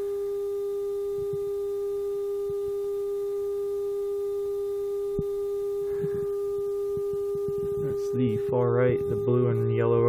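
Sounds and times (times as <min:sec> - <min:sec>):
steady electronic tone: 0:00.0 - 0:10.0.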